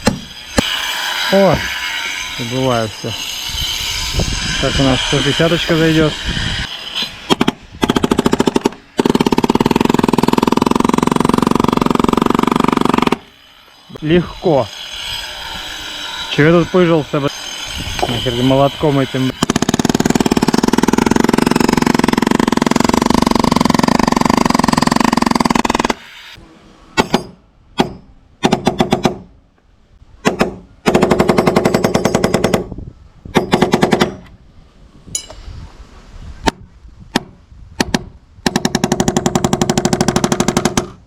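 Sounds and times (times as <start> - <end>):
impact driver hammering: 0.0 - 0.8, 27.0 - 29.3, 30.2 - 32.7.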